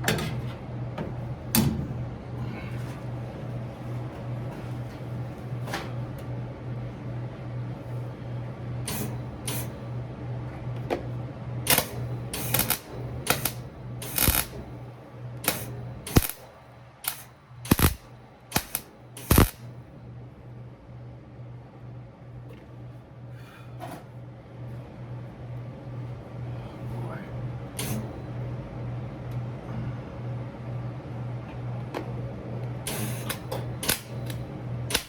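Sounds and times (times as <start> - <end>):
steady low hum: 0.0 - 35.0
sharp clicks and bursts: 11.7 - 14.5, 15.4 - 16.4, 17.0 - 19.6, 32.9 - 35.0.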